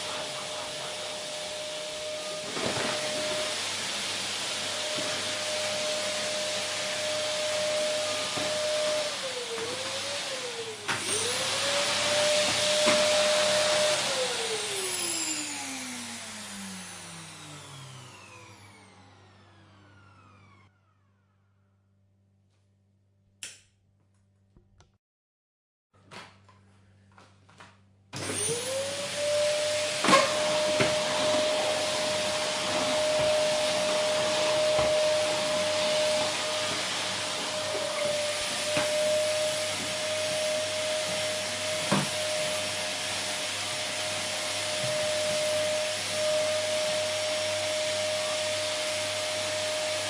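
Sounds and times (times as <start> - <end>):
vacuum cleaner motor whine: 0.0 - 21.7, 28.1 - 50.0.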